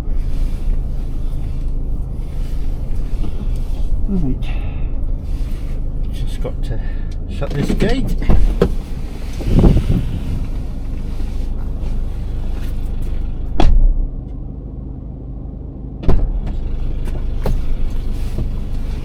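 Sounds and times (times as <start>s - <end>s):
vehicle engine idling: 0.0s - 19.0s
wind buffeting: 8.3s - 12.6s.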